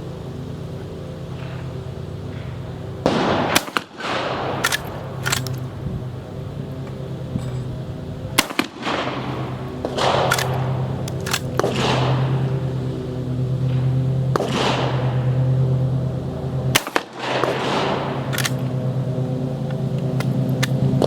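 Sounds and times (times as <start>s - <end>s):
steady low hum: 0.0s - 21.0s
gunshots with echo: 11.6s - 12.4s.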